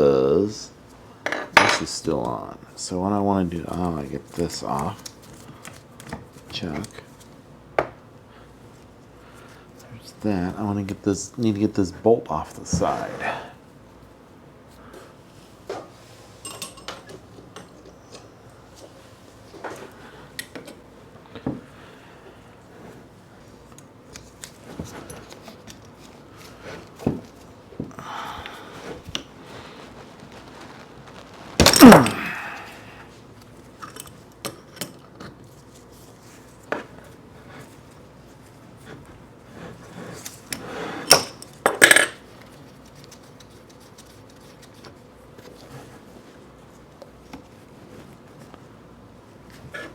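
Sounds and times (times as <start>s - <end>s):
metal tools clinking: 16.4s - 17.2s.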